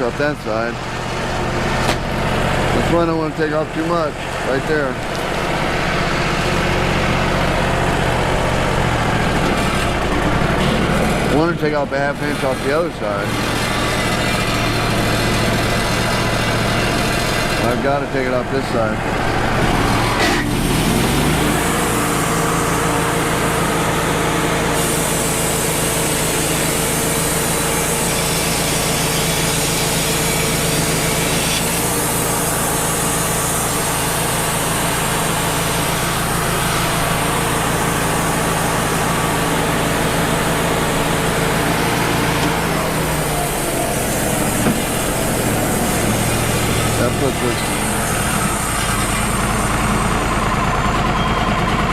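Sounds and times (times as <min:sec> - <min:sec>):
sawmill engine running: 0:00.0 - 0:51.9
band blade hissing through wood: 0:24.7 - 0:49.4.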